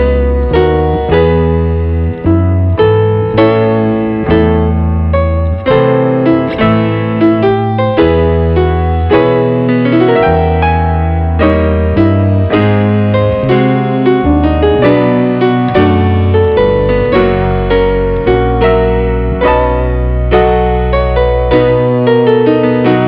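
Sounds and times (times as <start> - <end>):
instrumental keyboard music: 0.0 - 23.0.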